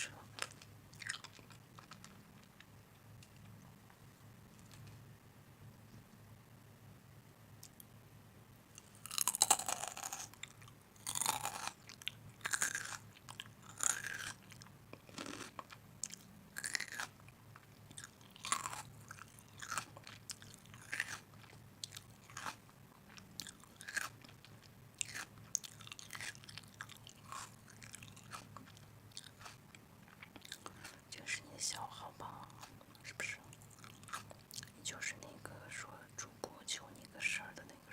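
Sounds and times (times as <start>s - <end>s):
person chewing crunchy food: 0.0s - 3.5s, 8.8s - 34.8s.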